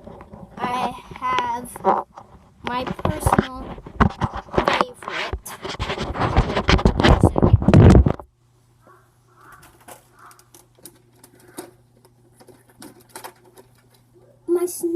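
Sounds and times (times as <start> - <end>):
low steady hum: 0.0 - 14.9
gear rustling and clattering: 9.4 - 14.2.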